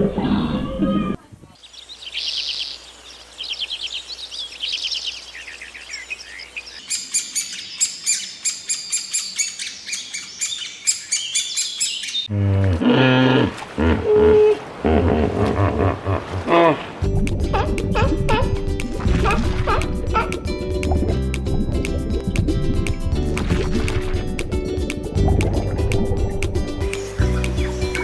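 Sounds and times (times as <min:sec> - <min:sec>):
songbirds chirping: 0:01.2 - 0:12.4, 0:22.9 - 0:28.0.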